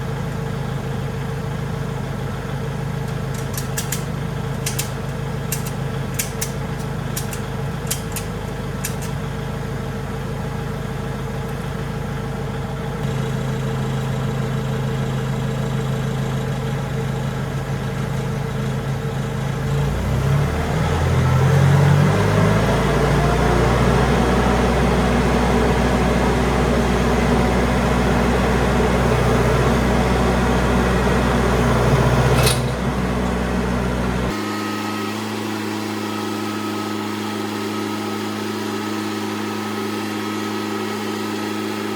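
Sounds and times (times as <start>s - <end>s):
tractor engine: 0.0s - 41.9s
clicks: 3.0s - 9.2s, 32.0s - 33.4s
sharp click: 3.1s - 9.2s, 32.3s - 32.9s.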